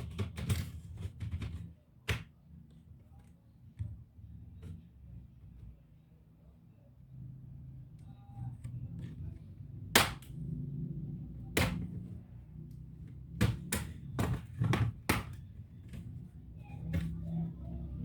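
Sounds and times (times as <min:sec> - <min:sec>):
laptop parts clicking and knocking: 0:00.0 - 0:02.5, 0:13.0 - 0:16.2
low steady hum: 0:02.4 - 0:18.0.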